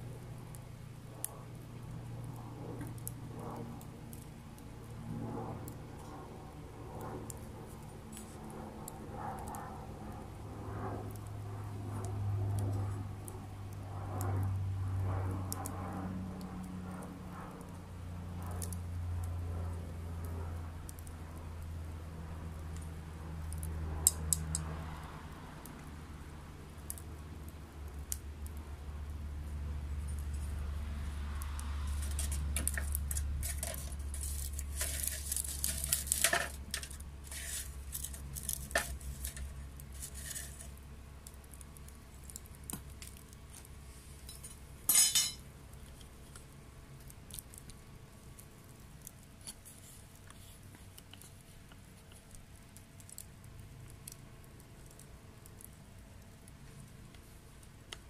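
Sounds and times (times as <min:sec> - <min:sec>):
fire roaring in wood stove: 0:00.0 - 0:58.0
wood crackling and popping: 0:00.0 - 0:58.0.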